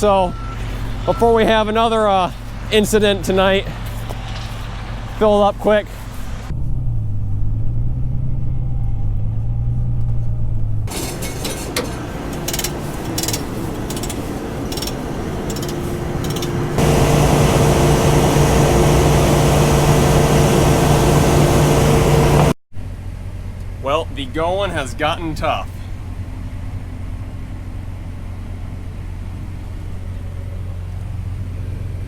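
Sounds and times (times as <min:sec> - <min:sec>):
farm machinery engine running: 0:00.0 - 0:06.5, 0:10.5 - 0:32.0
knocks and clicks: 0:10.5 - 0:16.9.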